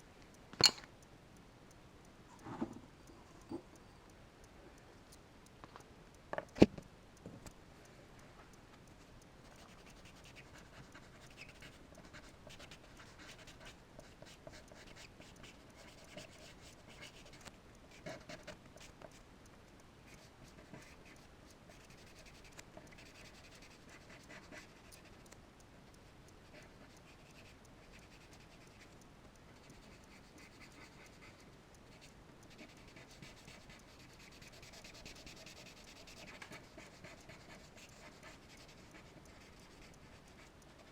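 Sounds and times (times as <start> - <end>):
charcoal scratching on paper: 29.6 - 40.9.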